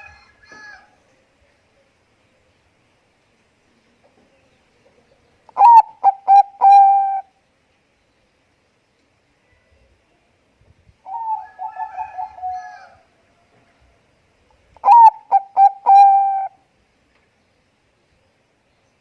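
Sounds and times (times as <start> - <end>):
dove cooing: 5.5 - 7.3, 11.1 - 13.0, 14.8 - 16.6.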